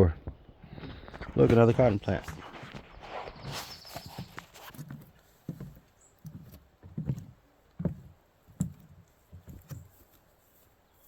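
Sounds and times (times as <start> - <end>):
soft footsteps outdoors: 0.0 - 11.0.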